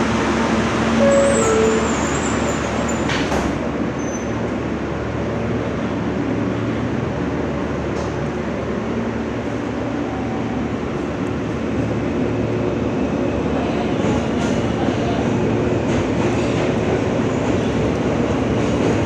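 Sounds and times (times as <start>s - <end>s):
subway car rumble and hiss: 0.0s - 19.0s
two-note falling tone: 1.0s - 2.4s.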